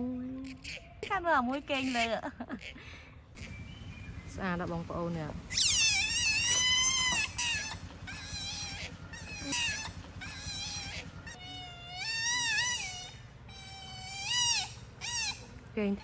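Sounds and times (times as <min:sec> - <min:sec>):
otter squeaking whistles: 0:03.4 - 0:04.8, 0:05.5 - 0:15.5.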